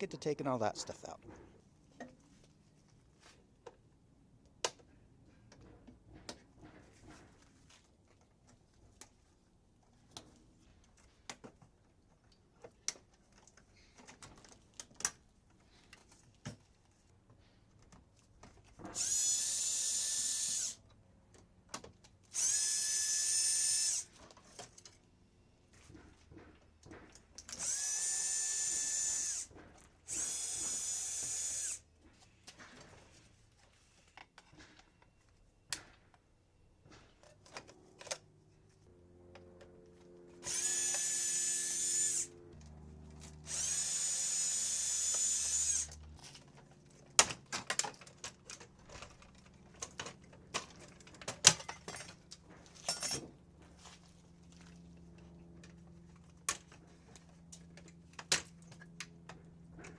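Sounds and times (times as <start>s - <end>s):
power drill whining: 18.8s - 20.8s, 22.3s - 24.2s, 27.4s - 31.9s, 39.3s - 46.3s
screws and metal parts clattering: 45.1s - 53.8s.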